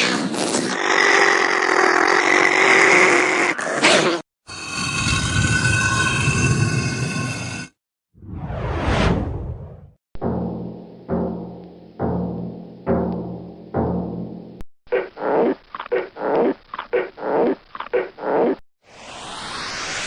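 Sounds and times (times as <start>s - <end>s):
deep timpani-like drum strikes: 10.2s - 14.6s.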